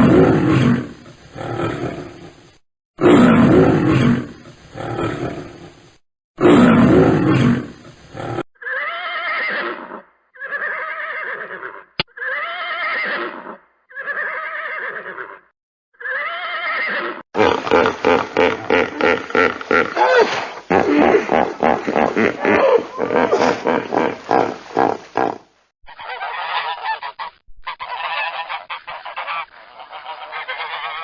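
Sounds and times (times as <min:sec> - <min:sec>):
lion roaring: 0:00.0 - 0:02.4, 0:03.0 - 0:05.8, 0:06.4 - 0:08.4
horse neighing: 0:08.6 - 0:15.4, 0:16.0 - 0:17.8
rapidly pulsing animal sound: 0:17.4 - 0:31.0.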